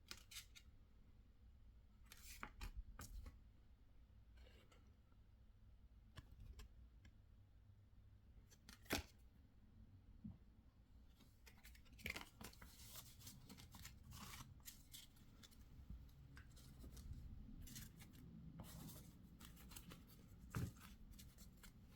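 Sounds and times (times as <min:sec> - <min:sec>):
cards and packaging rustling: 0:11.4 - 0:21.9
cards sliding: 0:16.3 - 0:21.9.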